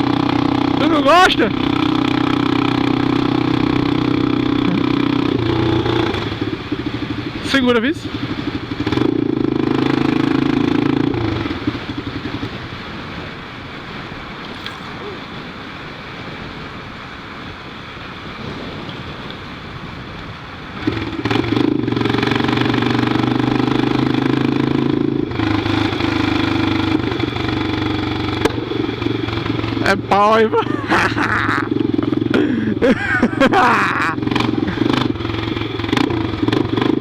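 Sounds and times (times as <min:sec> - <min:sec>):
motorcycle engine under throttle: 0:00.0 - 0:13.5, 0:20.8 - 0:32.8, 0:33.5 - 0:37.0.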